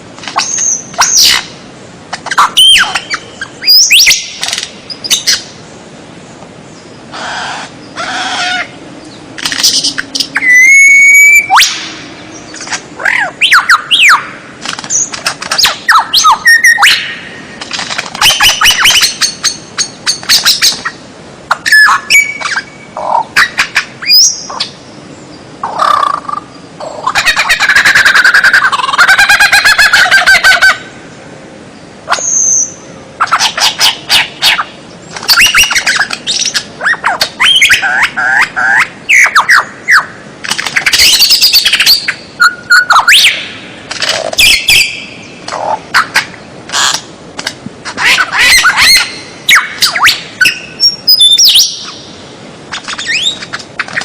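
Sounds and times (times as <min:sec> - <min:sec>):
songbird song: 0:00.0 - 0:54.0.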